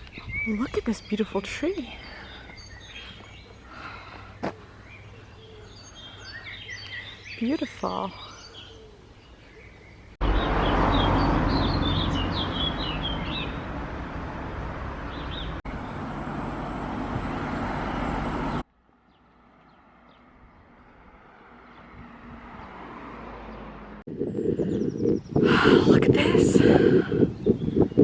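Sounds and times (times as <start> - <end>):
small birds chirping: 0.0 - 16.1, 24.2 - 28.0.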